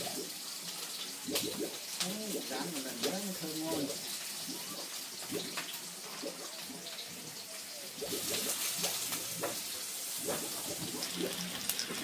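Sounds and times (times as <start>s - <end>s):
food sizzling in hot oil: 0.0s - 12.0s.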